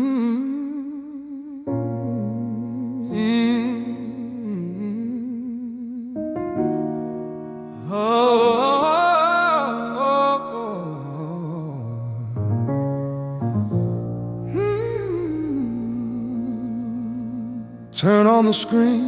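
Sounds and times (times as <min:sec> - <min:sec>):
person singing wordless phrases: 0:00.0 - 0:06.3, 0:07.8 - 0:12.6, 0:14.5 - 0:19.0
electric piano chords: 0:01.6 - 0:19.0.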